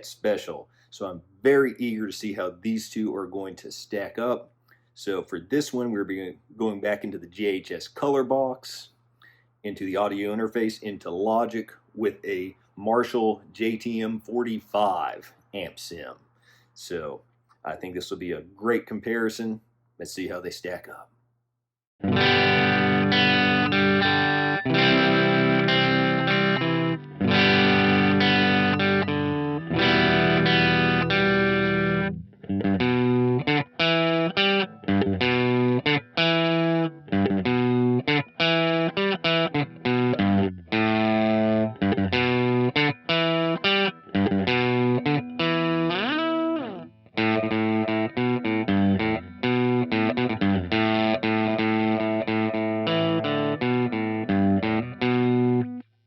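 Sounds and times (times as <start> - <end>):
overdriven electric guitar: 22.0 - 55.8.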